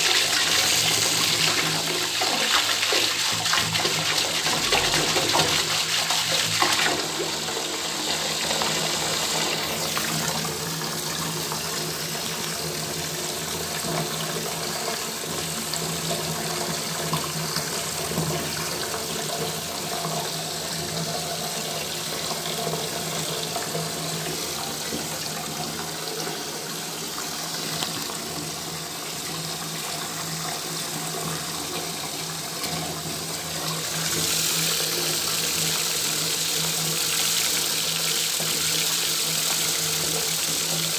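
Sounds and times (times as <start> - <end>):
tap water running into bathtub: 0.0 - 40.9.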